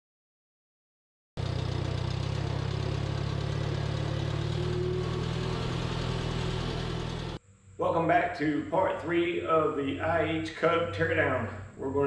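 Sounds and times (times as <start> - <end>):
tractor engine idling: 1.4 - 7.4.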